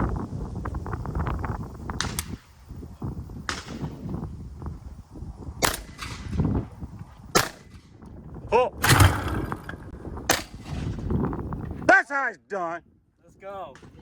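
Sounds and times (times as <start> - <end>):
shotgun shots with echo: 7.4 - 7.8, 8.8 - 10.9.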